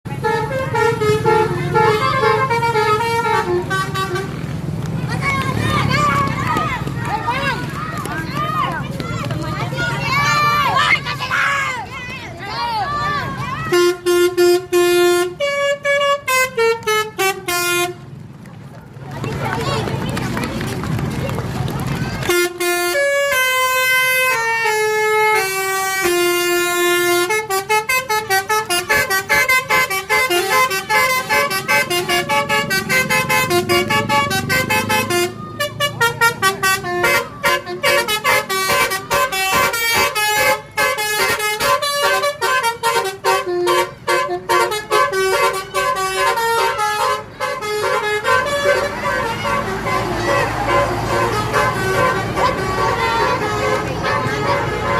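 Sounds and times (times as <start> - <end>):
multi-tone bus horn playing a tune: 0.1 - 4.4, 13.6 - 18.1, 22.2 - 54.9.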